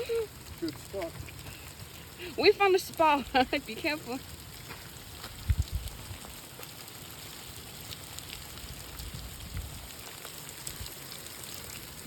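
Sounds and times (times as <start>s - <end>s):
steady rain hiss: 0.0s - 12.0s
dull low thumps: 5.3s - 6.0s.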